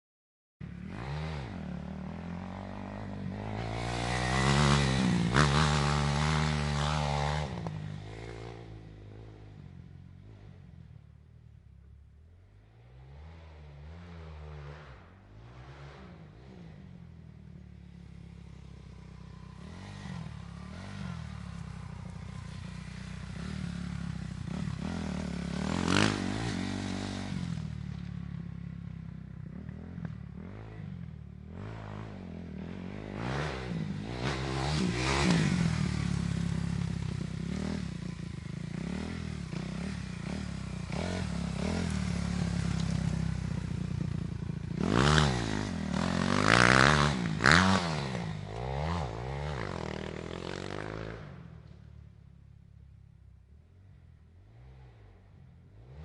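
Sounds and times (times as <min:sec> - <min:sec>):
dirt bike engine revving: 0:00.7 - 0:09.6, 0:18.0 - 0:28.6, 0:29.4 - 0:51.7.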